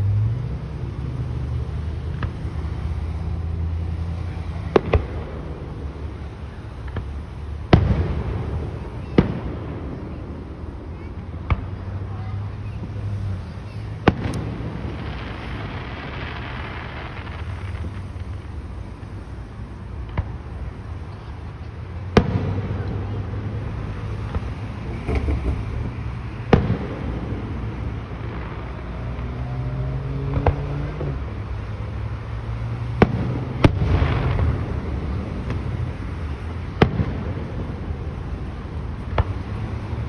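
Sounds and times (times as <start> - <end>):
firework shells bursting: 13.0 - 21.3.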